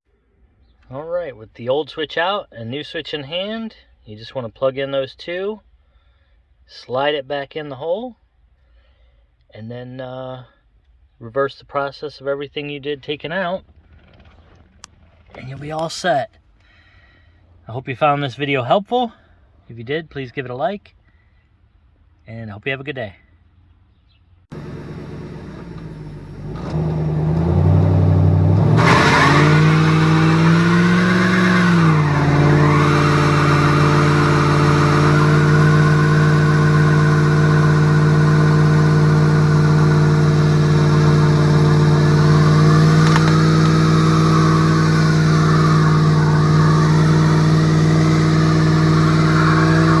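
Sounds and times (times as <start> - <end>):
car engine starting and revving: 24.5 - 50.0.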